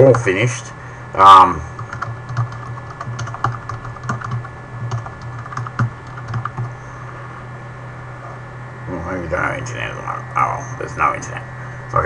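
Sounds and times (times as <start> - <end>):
steady low hum: 0.0 - 12.0
typing on computer keyboard: 1.8 - 6.7.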